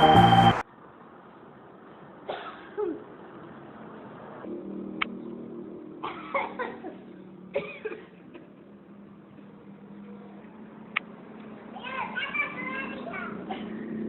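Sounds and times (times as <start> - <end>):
steady low hum: 0.0 - 0.6
person coughing: 7.6 - 8.1.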